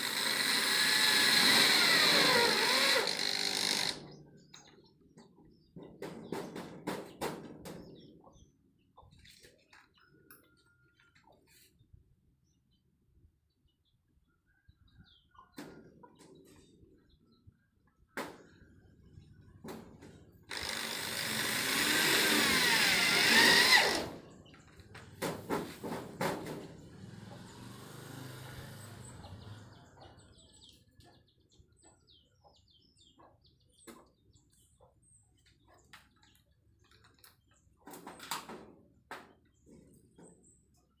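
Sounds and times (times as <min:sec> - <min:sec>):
harvesting machine motor whining: 0:20.5 - 0:24.2.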